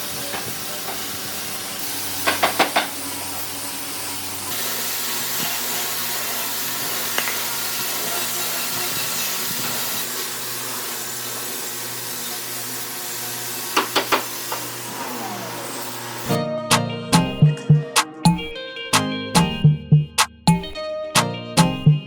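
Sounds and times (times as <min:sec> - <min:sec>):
plucked guitar music: 0:16.3 - 0:22.0.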